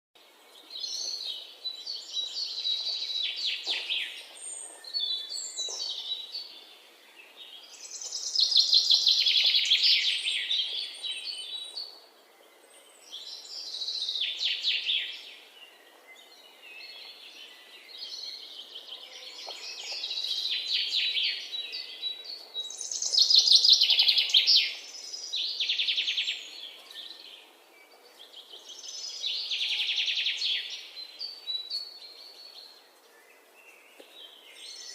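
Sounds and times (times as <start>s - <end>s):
faint outdoor background noise: 0.2s - 34.9s.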